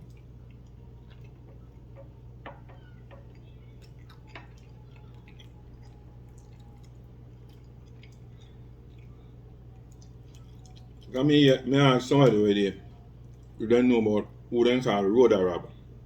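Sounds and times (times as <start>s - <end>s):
man chewing: 0.0s - 11.2s, 13.1s - 13.6s
steady low hum: 0.0s - 16.0s.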